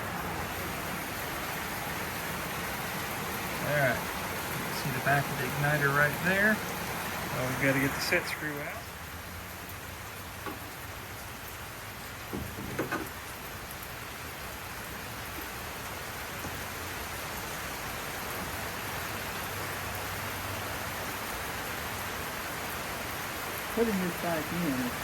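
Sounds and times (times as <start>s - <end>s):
steady rain-like hiss: 0.0s - 25.0s
light knocks: 12.3s - 13.2s.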